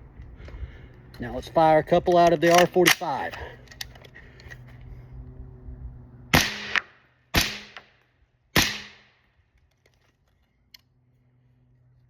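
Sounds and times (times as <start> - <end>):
suppressed rifle shots: 6.3 - 7.9, 8.6 - 9.1.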